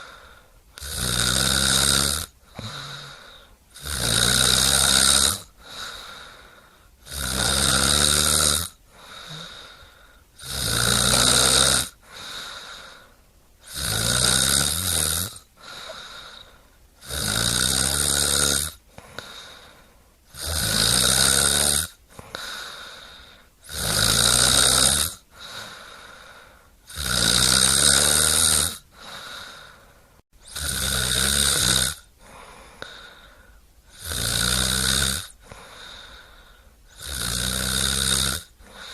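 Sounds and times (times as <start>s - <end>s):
quiet breathing: 0.0s - 0.9s, 2.3s - 3.8s, 5.2s - 7.1s, 8.2s - 13.8s, 15.2s - 17.0s, 18.8s - 20.4s, 21.9s - 23.7s, 25.2s - 26.9s, 28.8s - 30.6s, 32.0s - 34.0s, 35.3s - 37.0s, 38.4s - 38.9s
loud snoring: 0.0s - 6.4s, 7.0s - 19.7s, 20.3s - 29.8s, 30.4s - 33.2s, 33.9s - 36.1s, 36.9s - 38.9s.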